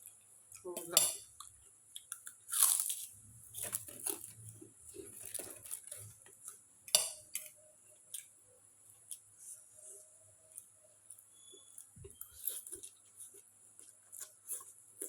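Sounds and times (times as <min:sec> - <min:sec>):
cutlery clinking on dishes: 0:06.9 - 0:07.4.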